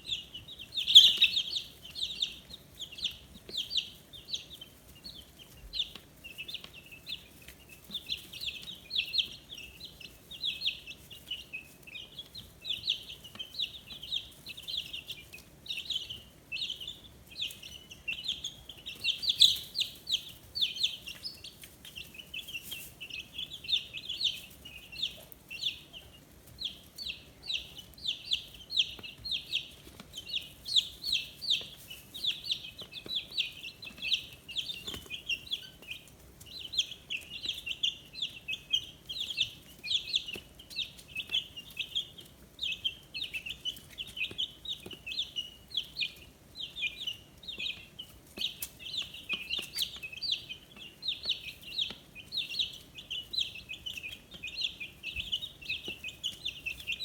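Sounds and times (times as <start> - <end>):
chicks peeping: 0.0 - 57.0.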